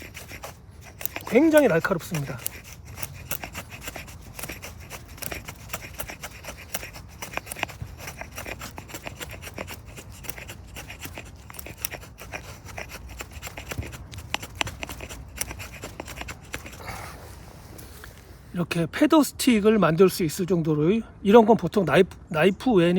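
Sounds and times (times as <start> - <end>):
axe blade scraping wood: 0.0 - 18.3.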